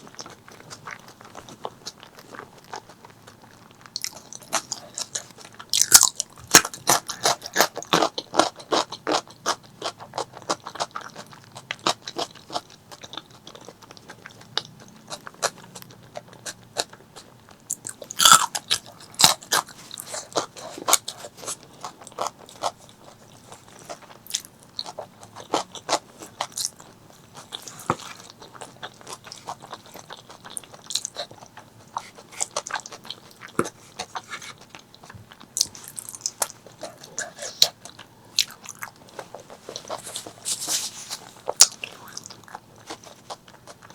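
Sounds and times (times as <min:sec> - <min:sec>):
person chewing and crunching food: 0:00.0 - 0:43.9.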